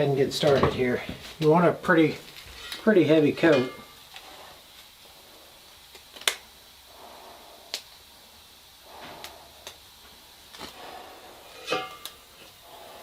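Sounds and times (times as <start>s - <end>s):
spray gun hissing: 2.9s - 13.0s.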